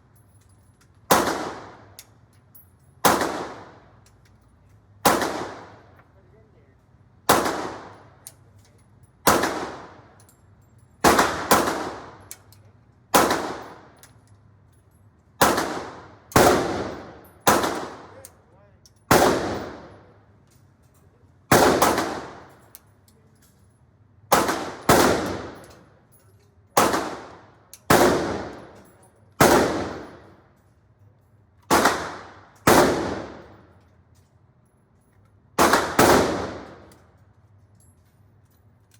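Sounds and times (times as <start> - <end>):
gunshots: 1.1 - 1.8, 3.0 - 3.8, 5.0 - 5.8, 7.3 - 8.0, 9.3 - 10.1, 11.0 - 12.2, 13.2 - 14.0, 15.4 - 18.2, 19.1 - 20.0, 21.5 - 22.6, 24.3 - 25.7, 26.8 - 28.8, 29.4 - 30.2, 31.7 - 33.6, 35.6 - 36.9.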